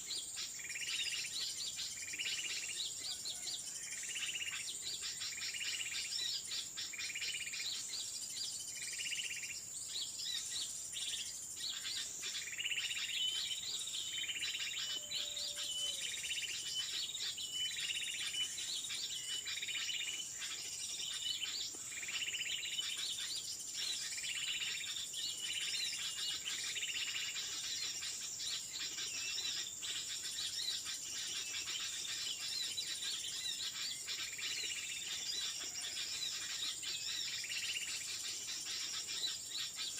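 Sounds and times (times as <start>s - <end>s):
bird chirps: 0.0s - 39.9s
birds calling: 0.0s - 39.9s
high insect drone: 8.7s - 39.9s.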